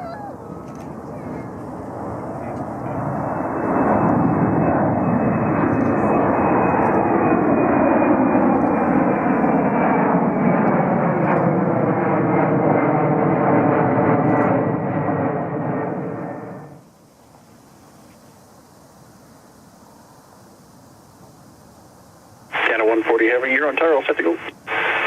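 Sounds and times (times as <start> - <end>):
high engine whine: 0.0 - 16.9, 22.5 - 25.0
jet airliner engines: 0.0 - 25.0.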